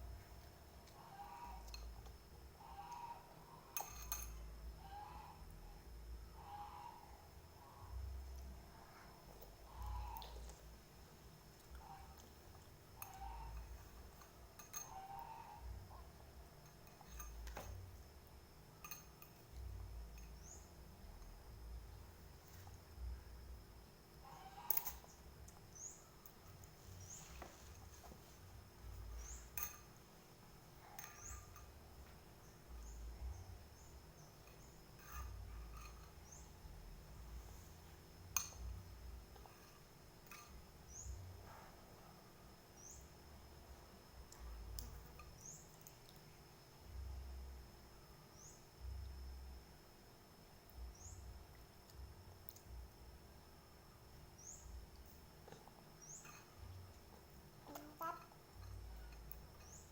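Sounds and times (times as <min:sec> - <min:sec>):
spoon clinking against a bowl: 0:03.7 - 0:04.5, 0:13.0 - 0:15.3, 0:16.6 - 0:17.8, 0:18.8 - 0:19.5, 0:29.2 - 0:30.0, 0:30.9 - 0:31.8, 0:34.4 - 0:36.5, 0:38.3 - 0:38.8, 0:56.1 - 0:56.6.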